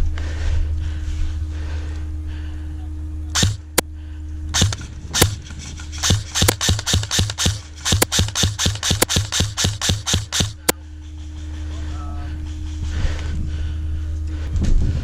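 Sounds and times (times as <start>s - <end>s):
steady low hum: 0.0s - 15.0s
airsoft gun shots: 3.4s - 3.8s, 4.5s - 10.8s.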